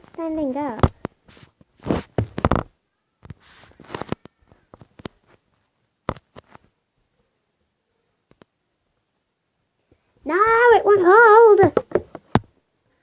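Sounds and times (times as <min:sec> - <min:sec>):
soft rustle: 0:00.0 - 0:07.3
tablet knocking: 0:11.7 - 0:12.5.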